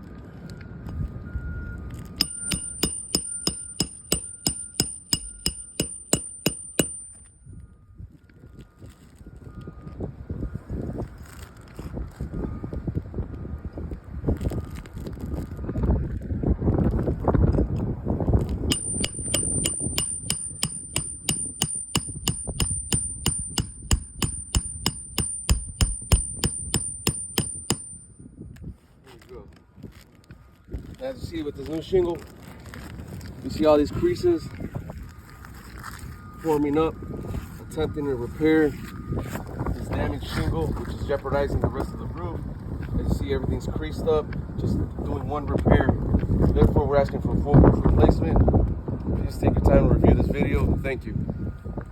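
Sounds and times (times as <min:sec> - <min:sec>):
wind noise on microphone: 0:00.0 - 0:51.9
hammer striking nail: 0:02.2 - 0:07.3, 0:18.7 - 0:28.2.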